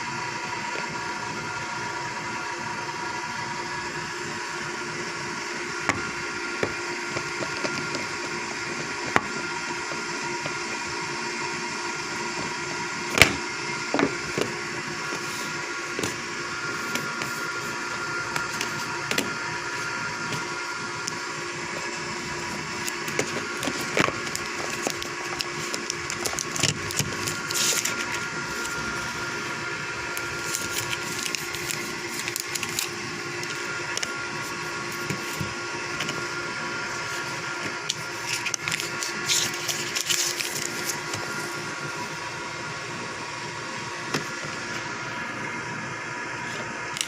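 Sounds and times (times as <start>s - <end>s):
steady hum: 0.0s - 47.0s
packaging rustling: 14.0s - 29.5s, 30.1s - 36.3s, 36.9s - 41.6s.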